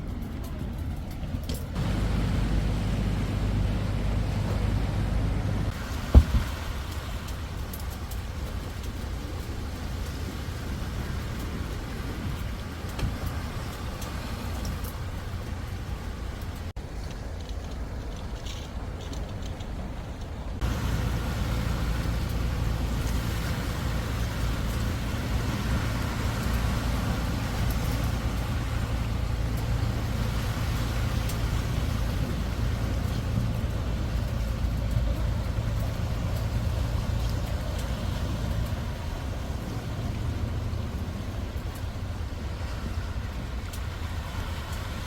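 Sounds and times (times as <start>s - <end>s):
motor engine droning: 1.8s - 6.6s, 20.6s - 41.2s.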